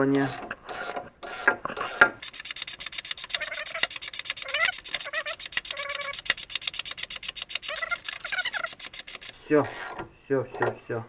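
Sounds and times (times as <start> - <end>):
ratchet wrench clicking: 2.2 - 9.4
short squeaks: 2.3 - 9.4.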